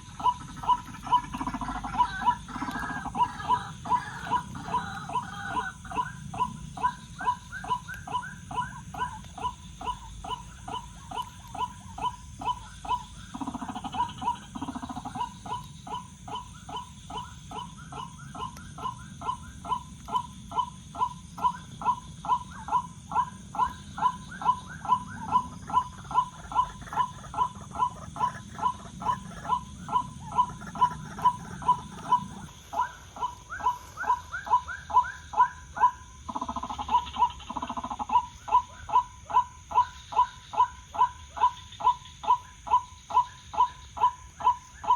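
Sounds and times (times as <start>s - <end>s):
waterhen wak-wak call: 0.0s - 44.9s.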